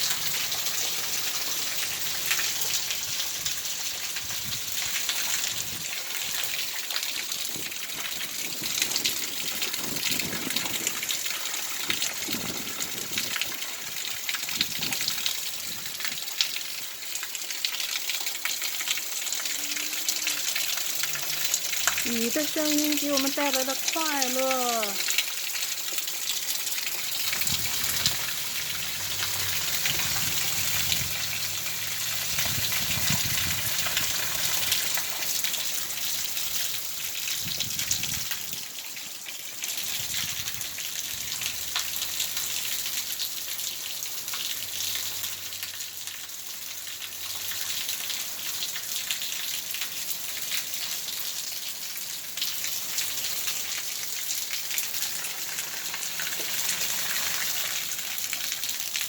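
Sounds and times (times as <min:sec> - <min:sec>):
heavy rain: 0:00.0 - 0:59.0
raindrops pattering on surfaces: 0:00.0 - 0:59.0.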